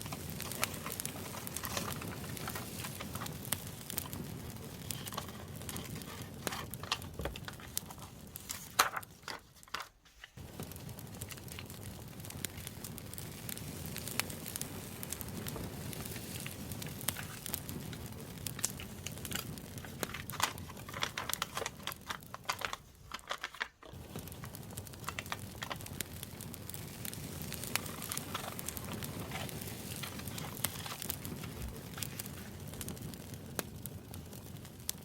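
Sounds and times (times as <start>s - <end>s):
paper rustling: 0.0s - 4.2s, 4.8s - 10.4s, 18.6s - 24.0s
campfire crackling: 0.0s - 35.0s.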